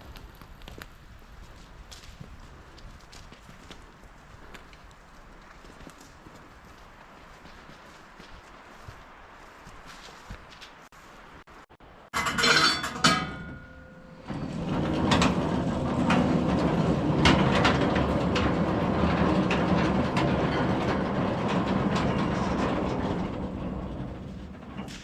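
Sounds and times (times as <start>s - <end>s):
sawmill metallic rattle: 12.2s - 25.0s
squealing clank: 12.2s - 25.0s.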